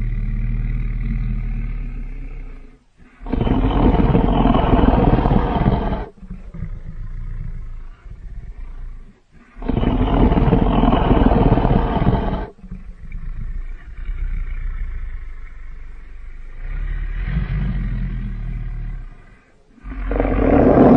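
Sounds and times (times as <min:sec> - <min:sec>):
low creature growl: 0:00.0 - 0:20.9
creature roaring: 0:03.2 - 0:06.4, 0:09.6 - 0:12.6, 0:19.8 - 0:20.9.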